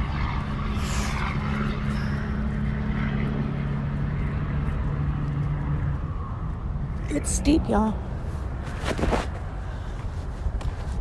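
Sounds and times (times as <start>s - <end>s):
low mechanical hum: 0.0s - 11.0s
traffic noise: 0.0s - 11.0s
brief rustle: 8.6s - 9.4s.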